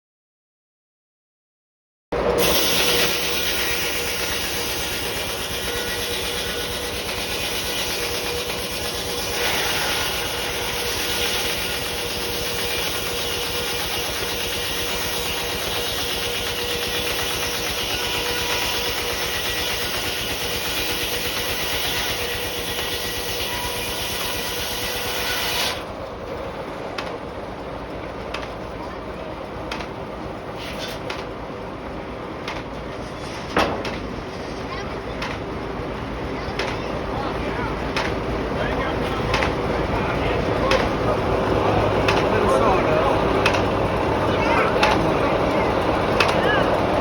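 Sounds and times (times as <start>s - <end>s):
sawmill hissing with steady tone: 2.3s - 26.6s, 33.8s - 47.0s.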